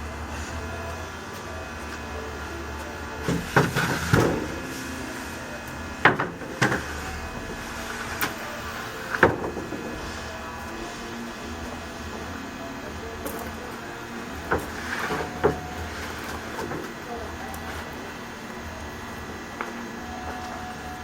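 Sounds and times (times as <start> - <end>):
low steady hum: 0.0 - 21.0
wooden boards knocking: 3.2 - 4.8, 6.0 - 7.6, 9.1 - 10.1, 14.4 - 18.0.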